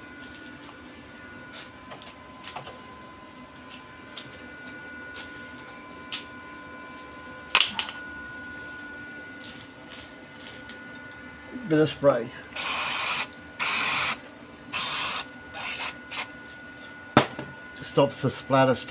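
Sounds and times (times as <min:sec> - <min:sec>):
faint high hum: 0:00.0 - 0:18.9.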